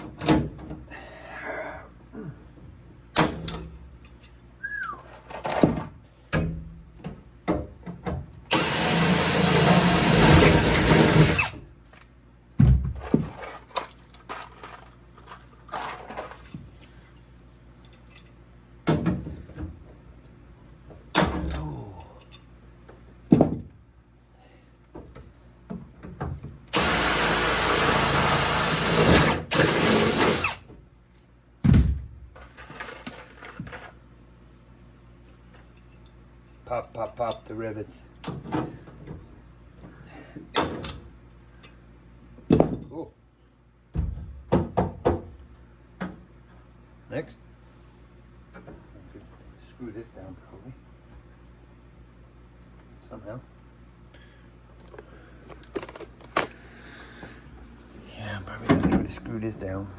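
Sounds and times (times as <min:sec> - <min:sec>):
power drill running: 0:08.5 - 0:11.6, 0:26.7 - 0:30.6
tools and metal clicking: 0:17.8 - 0:18.4.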